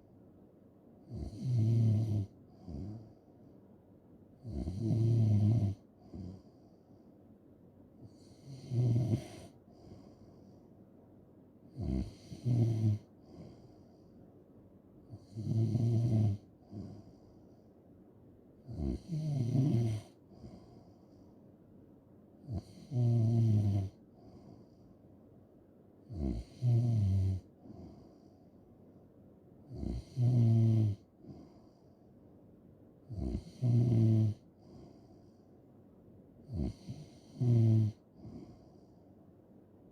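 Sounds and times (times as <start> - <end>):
quiet breathing: 0.0 - 39.9
person snoring: 1.1 - 3.2, 4.4 - 6.4, 8.1 - 10.2, 11.8 - 13.7, 15.2 - 17.1, 18.7 - 20.6, 22.5 - 24.0, 26.1 - 28.0, 29.7 - 31.4, 33.1 - 34.9, 36.5 - 38.6.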